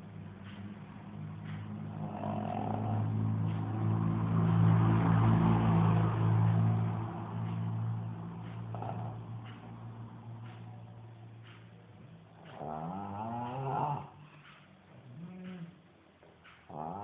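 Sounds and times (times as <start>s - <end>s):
vehicle engine hum: 0.0s - 17.0s.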